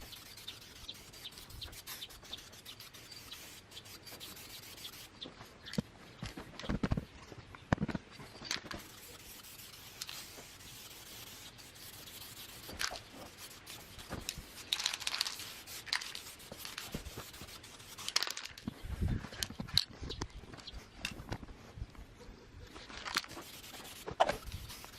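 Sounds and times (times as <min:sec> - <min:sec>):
paintbrush scratchy strokes: 0:00.0 - 0:05.2, 0:08.7 - 0:18.4, 0:22.7 - 0:24.9.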